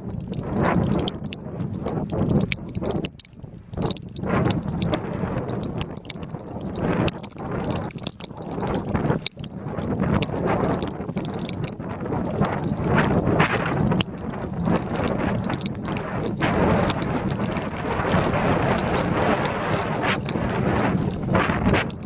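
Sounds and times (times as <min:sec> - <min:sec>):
wind buffeting microphone: 0:08.8 - 0:22.0.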